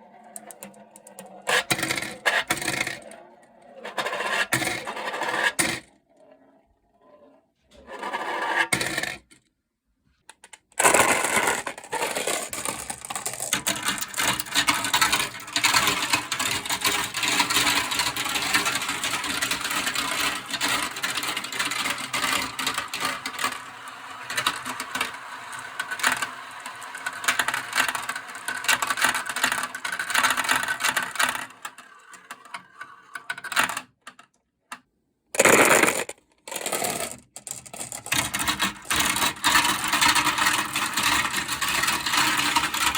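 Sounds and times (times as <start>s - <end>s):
marbles rattling down a marble run: 0.2s - 3.2s, 10.8s - 33.9s, 35.4s - 42.9s.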